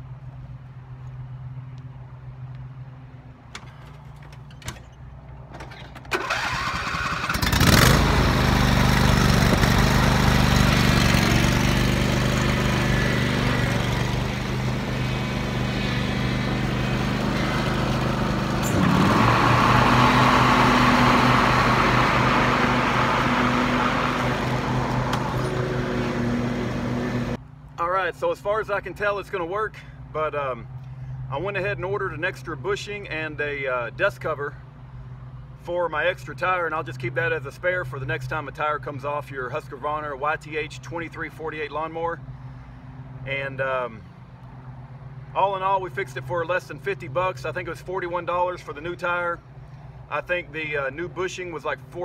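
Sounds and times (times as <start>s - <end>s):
riding lawn mower engine: 3.4s - 27.5s.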